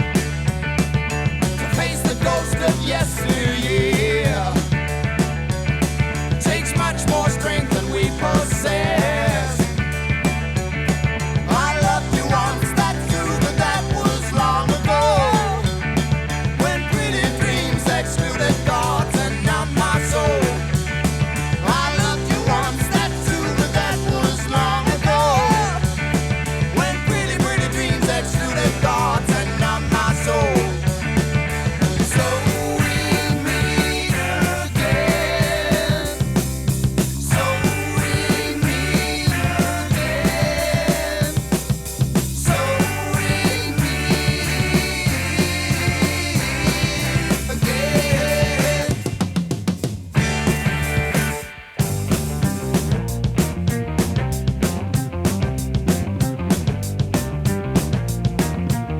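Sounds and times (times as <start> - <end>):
bass guitar: 0.0 - 58.9
drum kit: 0.0 - 58.9
wavering lead line: 6.0 - 49.2.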